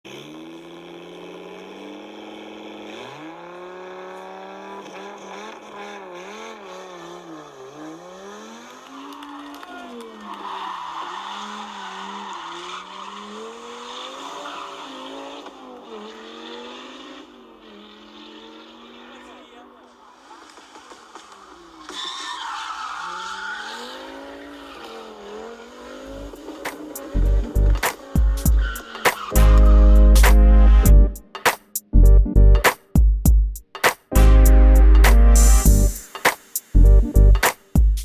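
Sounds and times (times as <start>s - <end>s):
car engine revving: 0.1s - 31.3s
tyre noise hiss: 35.1s - 38.0s.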